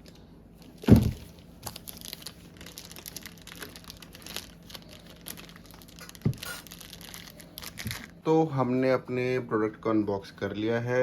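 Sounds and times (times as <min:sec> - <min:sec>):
plastic packaging crinkling: 0:00.0 - 0:08.2
dull thump: 0:00.8 - 0:01.3.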